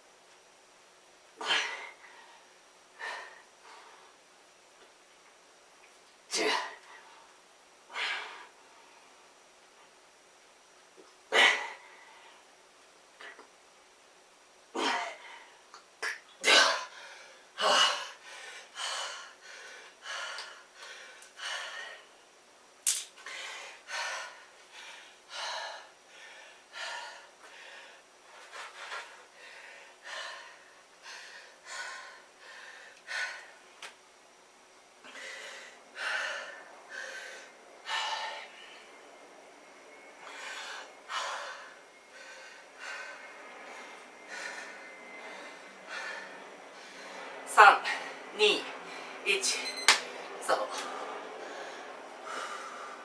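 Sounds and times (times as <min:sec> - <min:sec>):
man breathing hard: 0:01.4 - 0:04.2, 0:16.6 - 0:22.1, 0:23.2 - 0:33.6, 0:35.0 - 0:39.0, 0:40.0 - 0:48.2, 0:51.3 - 0:53.0.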